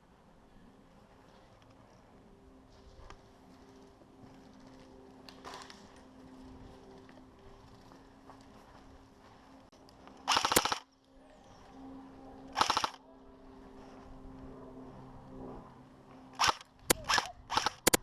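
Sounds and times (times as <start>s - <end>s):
airsoft gun bursts: 10.3s - 10.9s, 12.6s - 13.0s, 16.4s - 18.0s
airsoft gun cracks: 10.3s - 10.9s, 12.6s - 13.0s, 16.4s - 18.0s.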